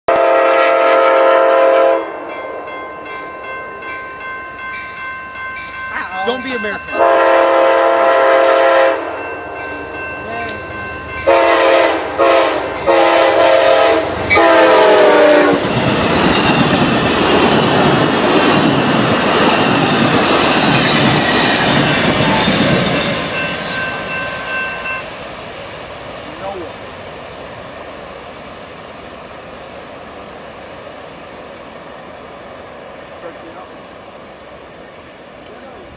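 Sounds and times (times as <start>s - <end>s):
train horn blasts: 0.1s - 2.8s, 6.9s - 9.4s, 11.2s - 15.7s
train wheels clattering: 9.2s - 25.3s.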